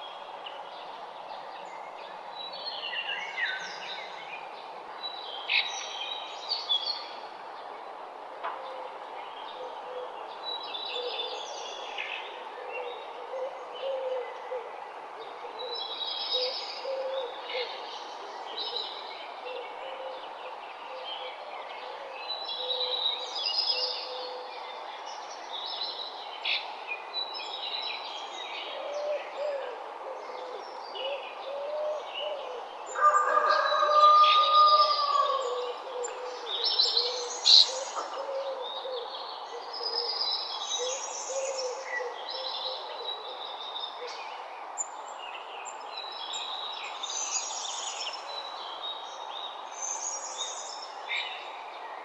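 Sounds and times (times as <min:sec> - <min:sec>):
songbirds chirping and trilling: 0:00.0 - 0:52.0
low cooing: 0:28.8 - 0:40.2.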